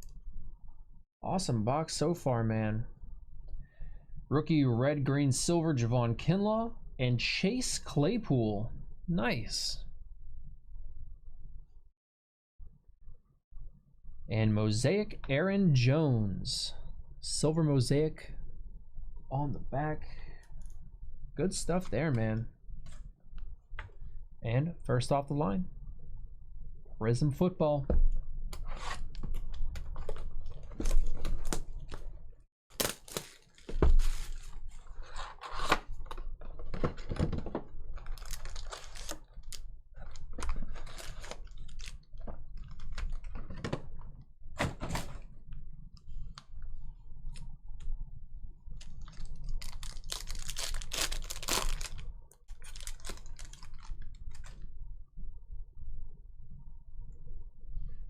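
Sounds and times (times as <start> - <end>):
pack wrapping tearing: 32.7 - 34.6, 38.0 - 42.0, 48.8 - 54.6.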